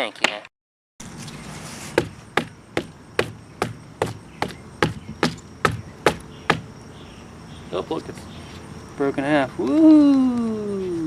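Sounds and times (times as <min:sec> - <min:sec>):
air filter knocking on hard surface: 0:02.0 - 0:06.7.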